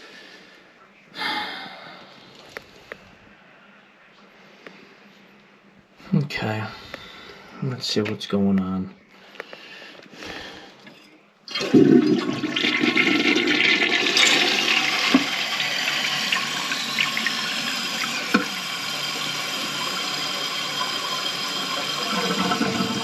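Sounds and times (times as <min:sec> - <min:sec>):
toilet flushing: 0:11.5 - 0:23.0.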